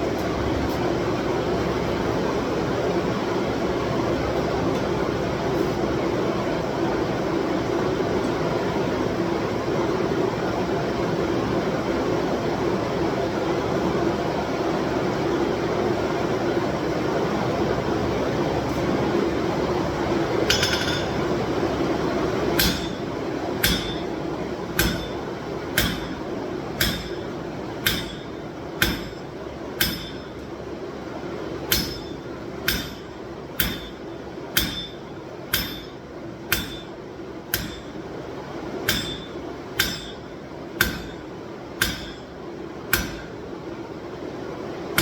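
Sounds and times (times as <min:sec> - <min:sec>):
hammer striking steel on anvil: 0:20.5 - 0:21.2, 0:22.6 - 0:30.5, 0:31.7 - 0:38.1, 0:38.8 - 0:43.5.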